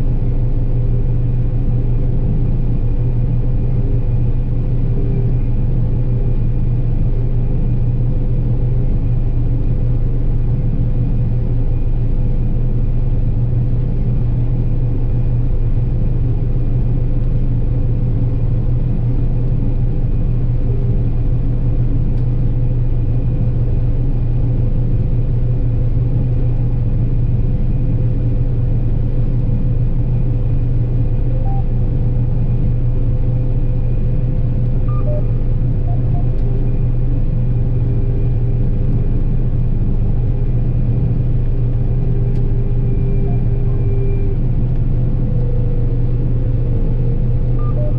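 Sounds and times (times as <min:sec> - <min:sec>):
diesel engine drone: 0:00.0 - 0:47.9
machinery whine: 0:00.0 - 0:47.9.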